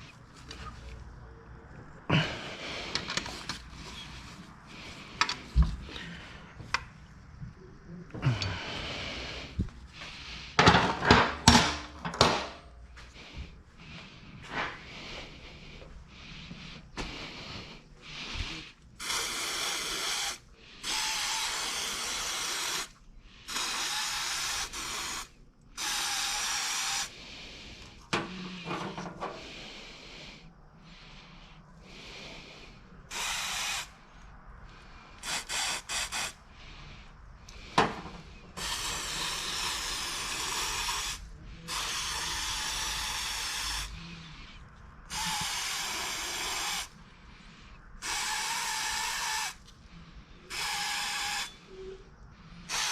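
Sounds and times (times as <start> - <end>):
spray nozzle hissing: 19.0 - 27.1, 33.1 - 34.0, 35.2 - 36.4, 38.6 - 43.9, 45.1 - 46.9, 48.0 - 49.6, 50.5 - 51.6, 52.7 - 52.9.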